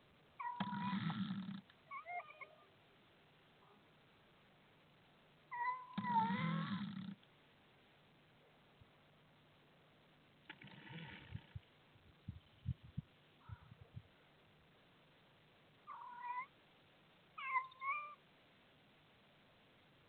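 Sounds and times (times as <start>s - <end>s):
cat chirps: 17.4s - 18.2s.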